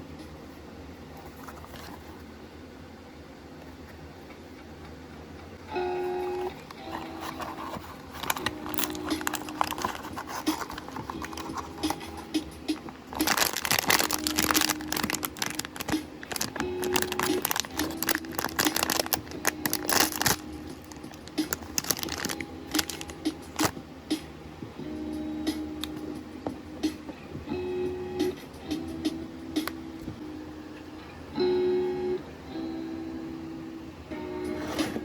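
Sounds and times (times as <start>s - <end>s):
soft background music: 5.6s - 35.0s
packaging crinkling and tearing: 6.4s - 12.0s, 12.8s - 23.7s.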